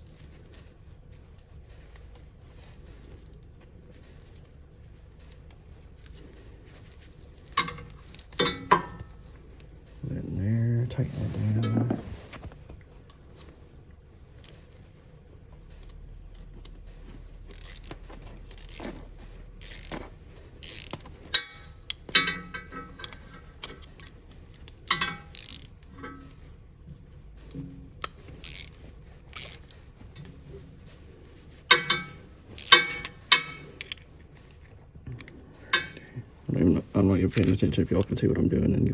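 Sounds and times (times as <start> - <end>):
metal tools clicking and clinking: 5.2 - 10.0, 17.4 - 30.4, 31.6 - 36.4.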